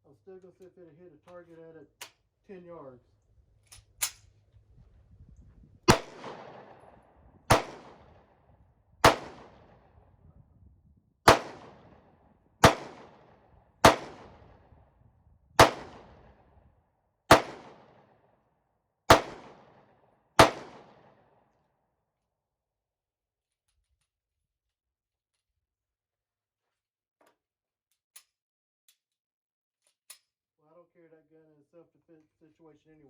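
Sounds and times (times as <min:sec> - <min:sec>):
pistol shots with echo: 0:05.9 - 0:08.4, 0:09.0 - 0:10.0, 0:11.3 - 0:14.8, 0:15.6 - 0:16.4, 0:17.3 - 0:18.2, 0:19.1 - 0:21.2.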